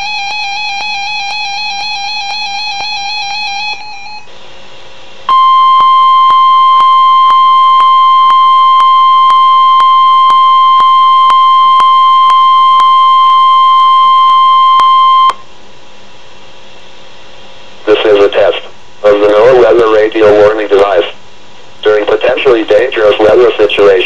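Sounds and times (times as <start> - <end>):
high alarm tone: 0.0 - 4.3, 5.3 - 15.4.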